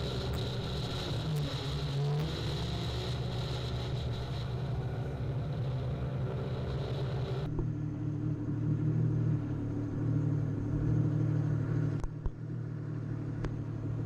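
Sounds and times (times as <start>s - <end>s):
jet ski engine running: 0.0s - 14.0s.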